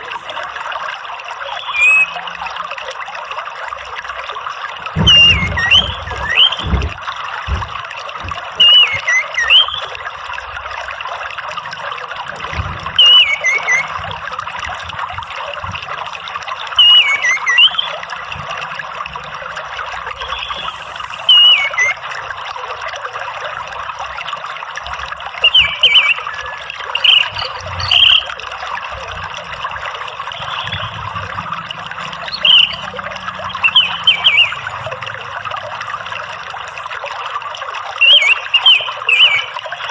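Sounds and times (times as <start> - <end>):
running water trickling: 0.0 - 39.9
thrush singing whistled phrases: 1.4 - 2.5, 5.0 - 6.8, 8.5 - 10.0, 12.9 - 14.1, 16.6 - 18.1, 20.1 - 22.2, 25.4 - 28.4, 29.9 - 31.3, 31.9 - 35.3, 37.9 - 39.9.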